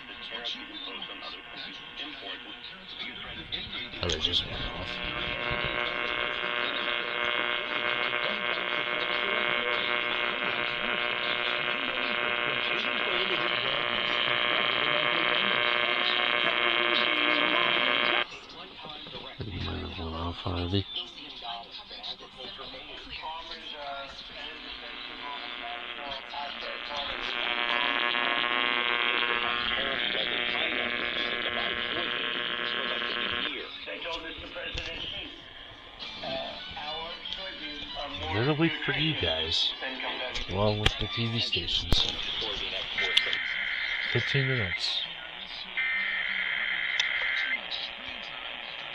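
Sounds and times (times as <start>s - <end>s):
harsh two-tone alert buzz: 24.6s - 33.4s.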